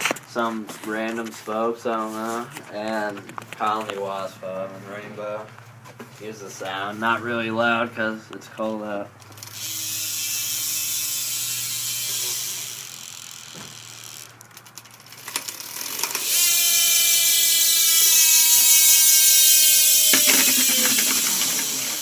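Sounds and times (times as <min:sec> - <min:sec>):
bike hub ratcheting tick: 0:09.2 - 0:22.0.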